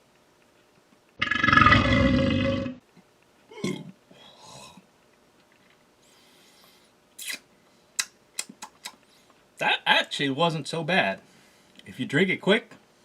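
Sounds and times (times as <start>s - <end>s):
man belching loudly: 3.5s - 4.0s.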